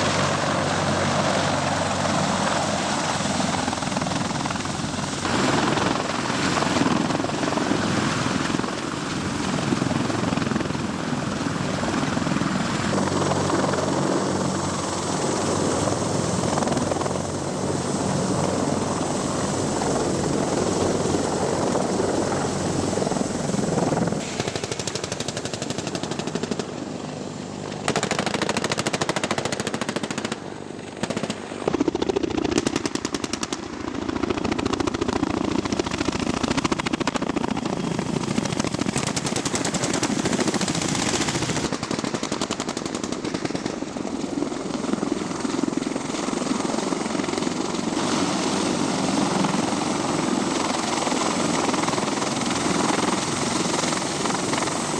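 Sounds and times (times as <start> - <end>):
helicopter rotor and engine: 0.0 - 54.9
rapid automatic gunfire: 24.3 - 26.8, 27.9 - 30.4, 31.0 - 33.7.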